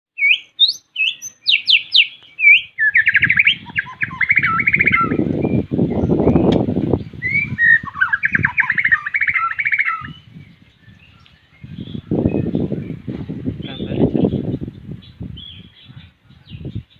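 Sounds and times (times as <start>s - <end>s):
bird singing whistled phrases: 0.2s - 13.0s.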